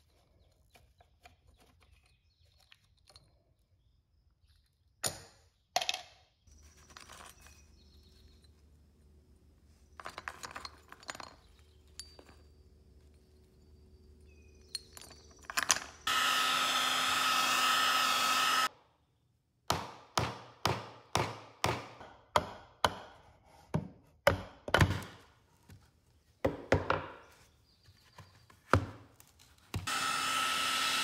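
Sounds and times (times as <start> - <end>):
power tool whining: 15.8 - 18.7, 29.8 - 31.0.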